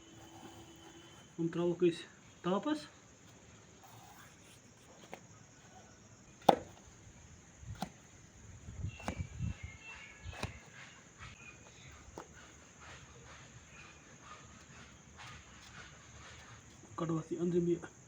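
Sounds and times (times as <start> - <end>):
knife chopping on cutting board: 6.4 - 6.8, 9.0 - 9.3, 10.3 - 10.7.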